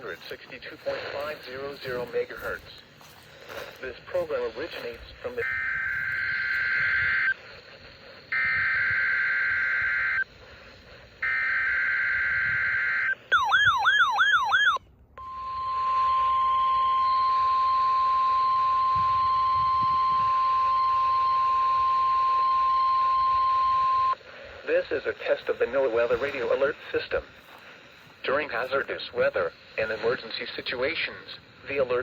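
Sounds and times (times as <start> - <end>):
steady warning alarm tone: 0.0 - 10.4, 11.2 - 24.2
screeching digital data bursts: 3.8 - 10.3.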